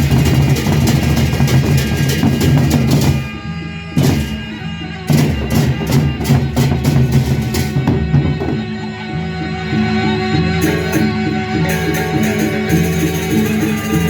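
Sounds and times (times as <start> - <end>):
rapid metallic clashes: 0.0 - 3.4, 4.0 - 8.1, 10.6 - 14.0
low gong and metallophone tones: 10.4 - 14.0.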